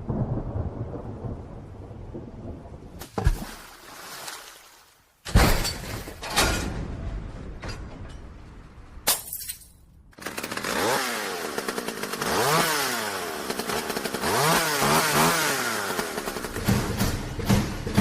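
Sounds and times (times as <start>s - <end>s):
small engine revving: 10.2s - 17.1s.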